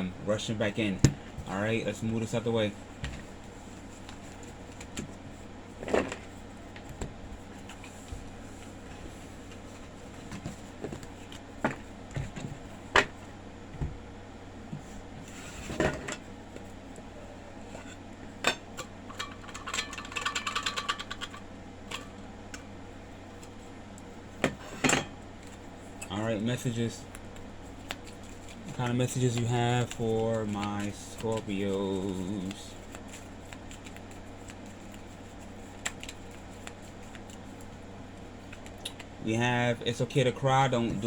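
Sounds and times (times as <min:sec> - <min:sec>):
cards shuffling clicks: 0:27.1 - 0:37.7.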